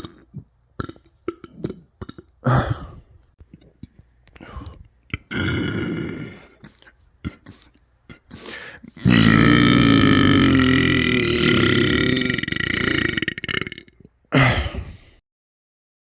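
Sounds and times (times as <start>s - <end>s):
person burping: 0.0s - 3.1s, 5.1s - 8.3s, 8.9s - 15.1s
mouth clicks: 0.0s - 14.2s.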